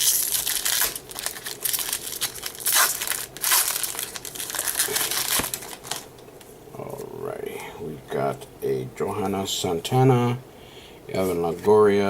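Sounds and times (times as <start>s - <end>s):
foil wrapper crinkling and tearing: 0.0s - 6.1s.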